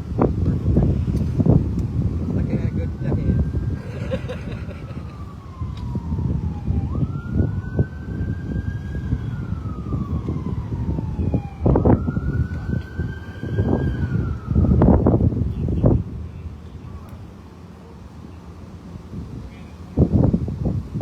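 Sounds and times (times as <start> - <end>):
emergency vehicle siren wailing: 0.0 - 21.0.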